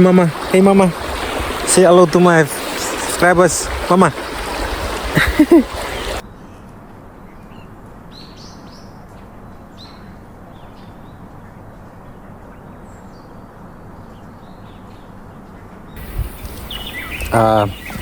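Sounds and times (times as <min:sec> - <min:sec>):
small birds chirping: 0:00.1 - 0:06.2, 0:15.9 - 0:18.0.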